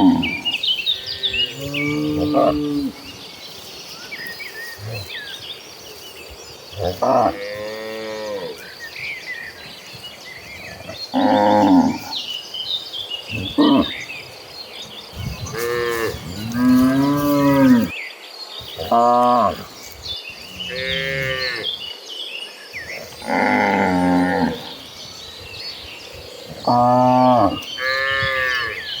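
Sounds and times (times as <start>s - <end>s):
cows mooing: 0.0s - 3.0s, 6.8s - 8.6s, 10.7s - 12.2s, 15.2s - 17.9s, 20.5s - 21.7s, 23.1s - 24.8s, 26.5s - 28.9s.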